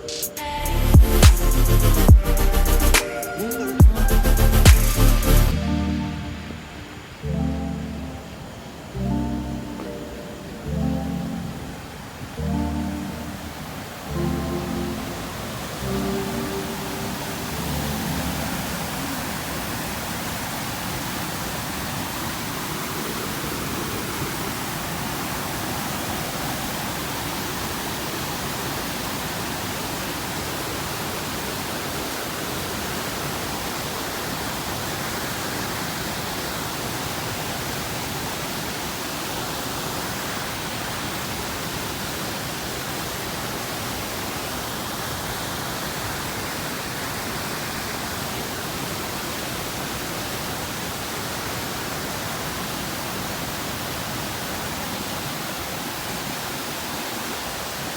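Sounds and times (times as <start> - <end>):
waterfall roaring: 4.6 - 57.9.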